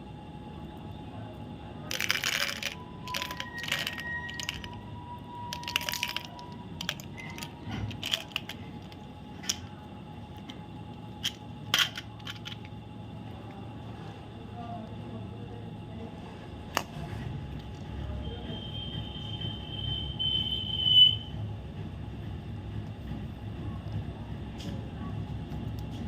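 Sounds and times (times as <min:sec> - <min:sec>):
wrapper crinkling and rustling: 0:01.9 - 0:04.8, 0:05.5 - 0:09.6.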